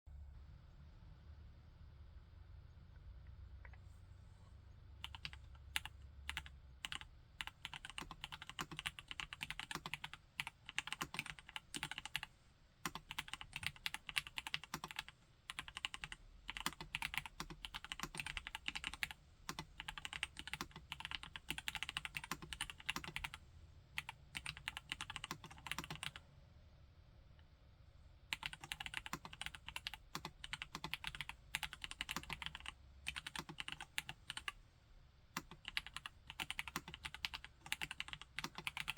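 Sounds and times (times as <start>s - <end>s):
typing on mechanical keyboard: 5.0s - 23.4s, 24.0s - 26.2s, 28.3s - 34.6s, 35.4s - 38.9s.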